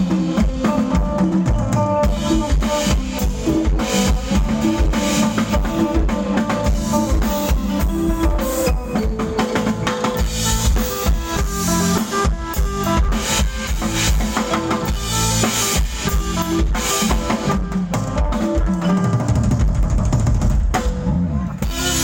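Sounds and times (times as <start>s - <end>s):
band music with drum kit: 0.0s - 22.0s.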